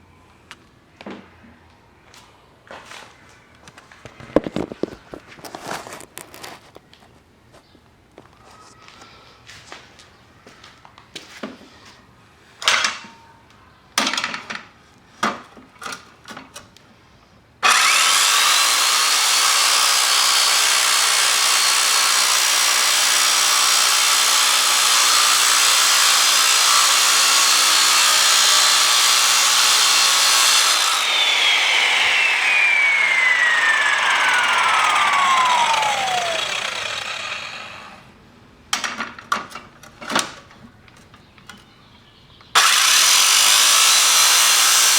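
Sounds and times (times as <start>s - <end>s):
electric saw cutting steel: 17.6s - 38.2s, 42.6s - 44.9s.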